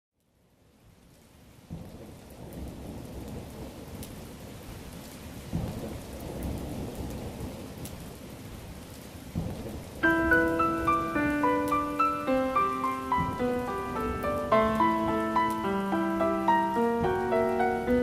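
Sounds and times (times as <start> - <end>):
steady rain: 0.2 - 18.0
low rolling thunder: 1.7 - 18.0
piano notes: 10.0 - 18.0.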